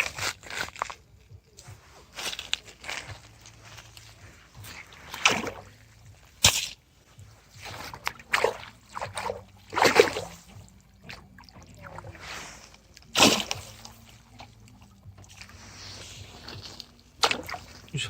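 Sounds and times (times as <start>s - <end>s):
fish splashing in water: 2.2s - 18.0s.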